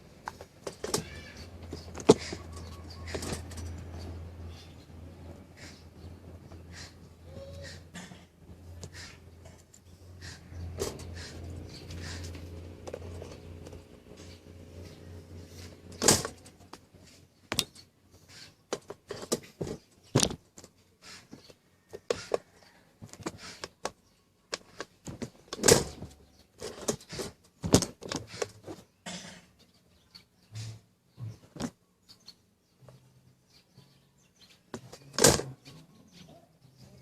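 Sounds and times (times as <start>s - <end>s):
electrical hum: 0.0s - 17.7s
hard objects clicking and knocking: 0.2s - 4.2s, 18.7s - 28.8s.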